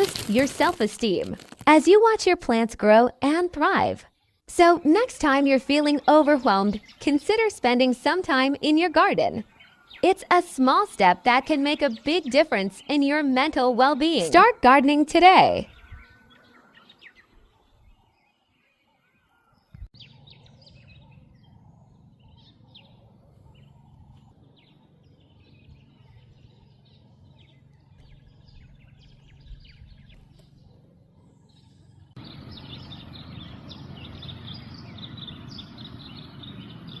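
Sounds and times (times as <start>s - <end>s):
small birds chirping: 0.0s - 2.2s, 3.3s - 37.0s
low background rumble: 19.9s - 37.0s.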